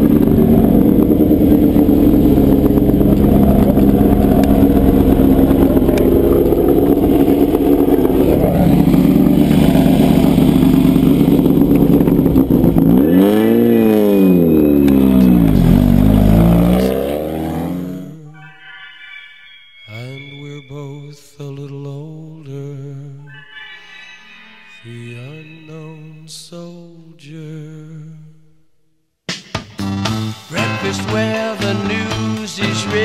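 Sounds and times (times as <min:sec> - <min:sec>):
race car engine running hard: 0:00.0 - 0:18.2.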